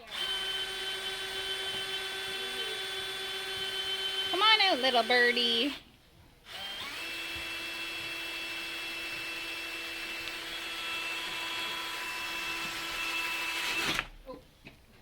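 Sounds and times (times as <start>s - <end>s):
power drill boring: 0.0s - 5.8s, 6.5s - 14.2s.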